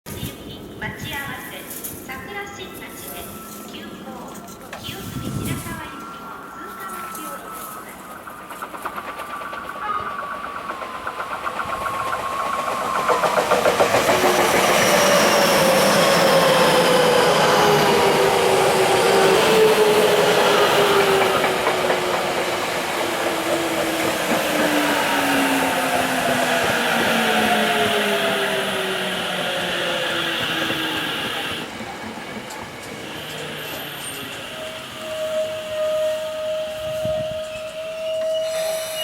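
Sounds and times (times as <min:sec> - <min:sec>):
traction motors whining: 0:02.9 - 0:39.0
wheels clacking over rail joints: 0:07.1 - 0:34.5.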